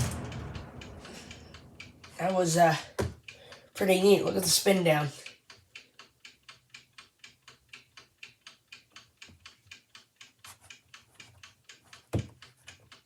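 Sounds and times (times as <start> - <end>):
loud knock: 0.0 - 2.2
fan blades ticking faintly: 0.0 - 11.8.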